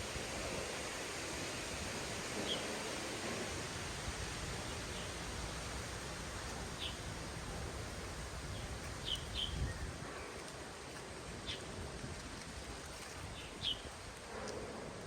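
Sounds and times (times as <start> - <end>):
outdoor background hiss: 0.0 - 9.6.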